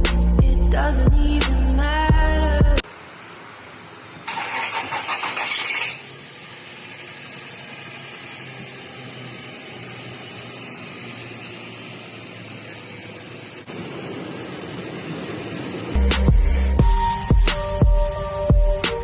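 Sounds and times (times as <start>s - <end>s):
engine idling: 0.0s - 19.0s
engine cranking on starter: 4.2s - 13.5s.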